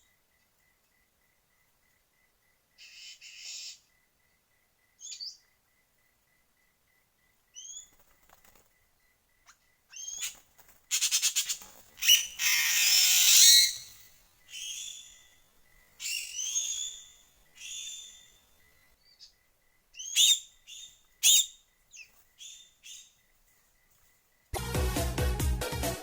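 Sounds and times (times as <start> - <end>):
bird wing flapping: 7.8 - 8.8, 10.2 - 12.6
rising bird chirps: 11.1 - 15.4, 16.0 - 19.3.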